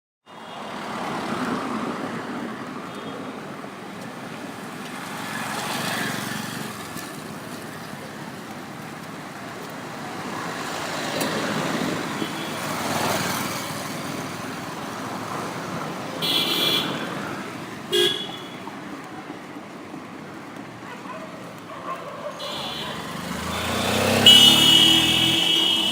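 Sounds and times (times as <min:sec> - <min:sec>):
vehicles passing: 0:00.3 - 0:25.9
vehicle horn honks: 0:16.2 - 0:17.1, 0:17.9 - 0:18.6, 0:22.4 - 0:25.9.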